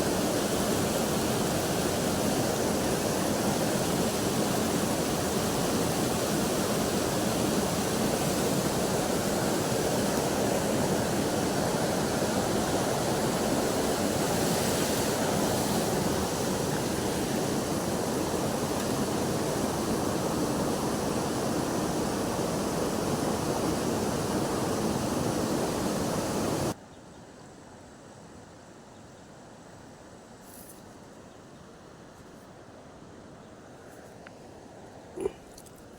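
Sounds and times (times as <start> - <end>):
rushing river water: 0.0 - 26.8.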